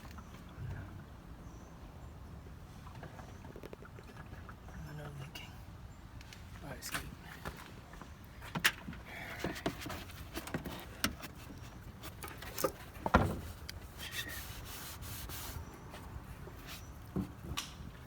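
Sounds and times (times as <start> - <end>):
rubbing and scraping: 9.4 - 17.5.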